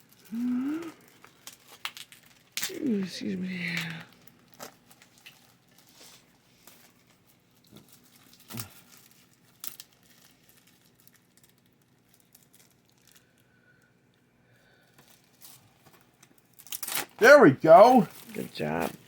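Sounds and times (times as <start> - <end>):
shrink wrap crinkling and tearing: 0.0 - 13.9, 14.8 - 19.0.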